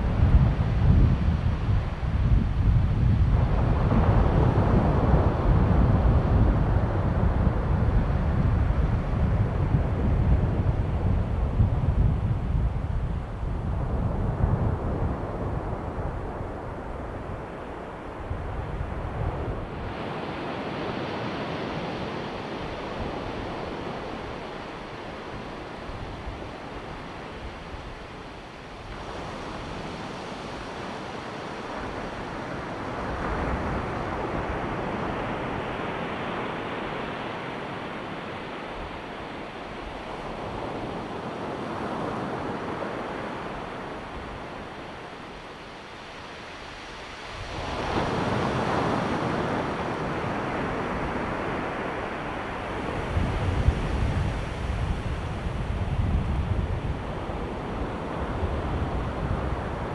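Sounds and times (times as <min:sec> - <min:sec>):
wind buffeting microphone: 0:00.0 - 0:59.9
waves breaking on shore: 0:14.7 - 0:59.9.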